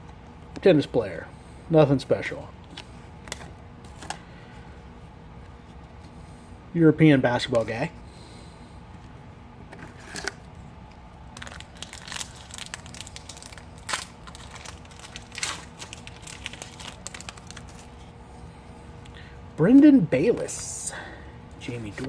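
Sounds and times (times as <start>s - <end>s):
plastic wrapper crinkling: 11.2s - 18.1s.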